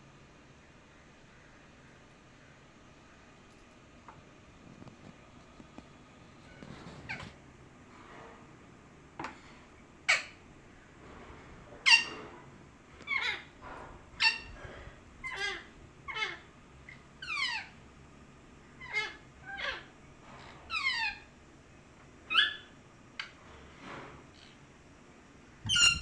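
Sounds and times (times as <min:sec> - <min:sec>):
parrot screeching: 0:11.8 - 0:12.2, 0:13.0 - 0:13.5, 0:14.2 - 0:14.6, 0:15.2 - 0:17.8, 0:18.8 - 0:21.3, 0:22.3 - 0:22.7, 0:25.7 - 0:26.0.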